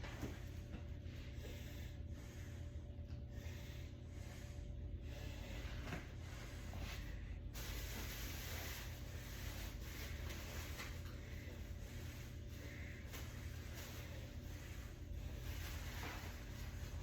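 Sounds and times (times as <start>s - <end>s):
rustling and handling noises: 5.7s - 17.0s.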